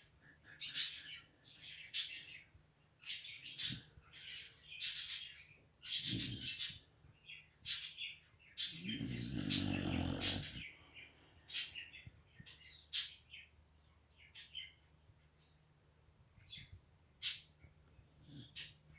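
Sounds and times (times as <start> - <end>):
dog snoring: 6.0 - 6.6, 8.7 - 10.7.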